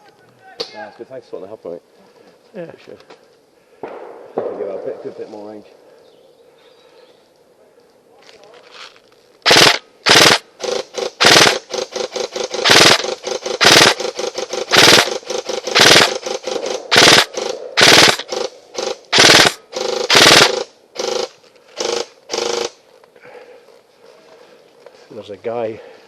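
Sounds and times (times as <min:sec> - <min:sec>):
airsoft gun shots: 0:09.5 - 0:22.7.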